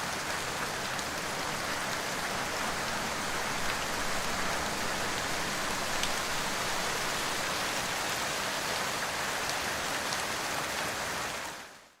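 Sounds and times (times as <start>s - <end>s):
steady rainfall: 0.0s - 12.0s
raindrops ticking: 0.9s - 7.5s.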